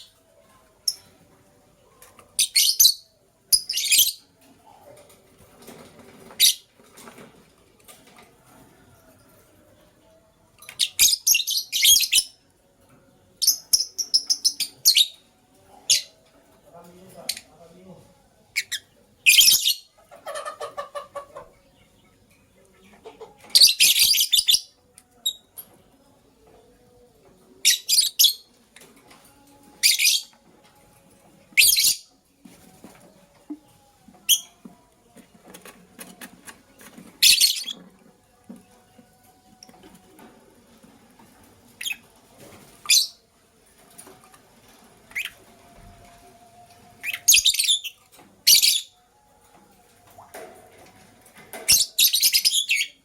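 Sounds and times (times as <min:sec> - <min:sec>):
lovebirds shrill chirps: 0:18.6 - 0:19.9, 0:47.0 - 0:49.0, 0:51.7 - 0:53.0.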